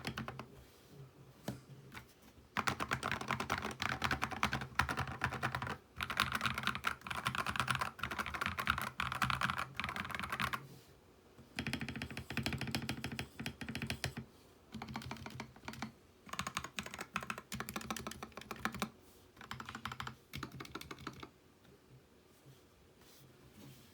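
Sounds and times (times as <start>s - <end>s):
typing on mechanical keyboard: 0.0s - 0.4s, 2.6s - 10.6s, 11.5s - 21.3s.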